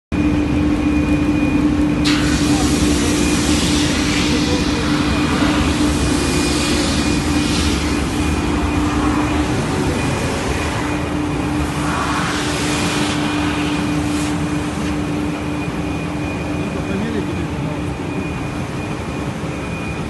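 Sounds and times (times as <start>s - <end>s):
sander machine drone: 2.3s - 15.2s.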